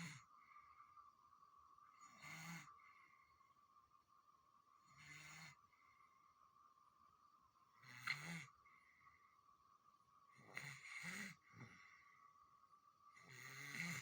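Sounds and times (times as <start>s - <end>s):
baby snoring: 13.2s - 14.0s.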